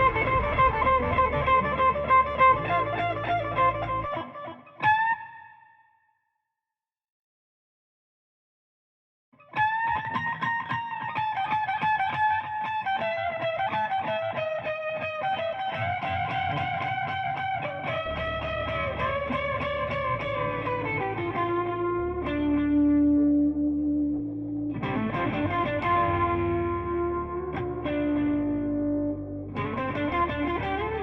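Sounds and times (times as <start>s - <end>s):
low bass notes: 0.0s - 4.1s, 17.9s - 31.0s
guitar music: 0.0s - 5.8s, 9.4s - 31.0s.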